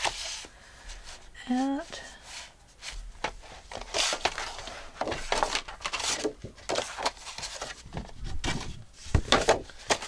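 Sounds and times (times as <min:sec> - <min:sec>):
paper rustling and tapping: 0:03.2 - 0:10.0.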